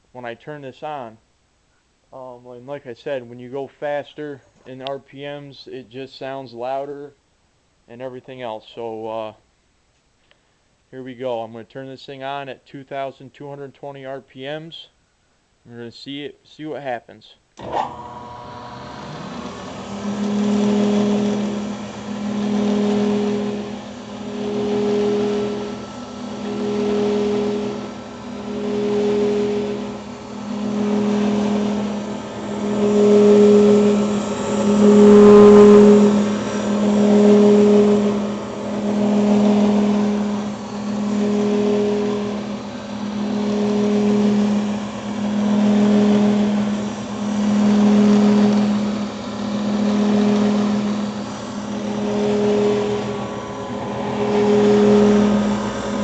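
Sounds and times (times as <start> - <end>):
milling machine spindle humming: 17.6 - 56.0.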